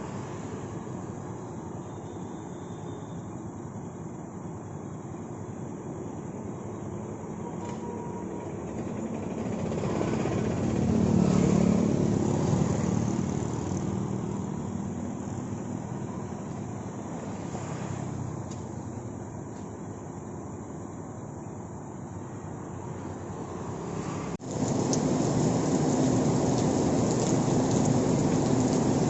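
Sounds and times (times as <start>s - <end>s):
rainwater running along a channel: 4.8s - 20.0s, 22.1s - 29.0s
motor vehicle passing: 9.6s - 15.0s.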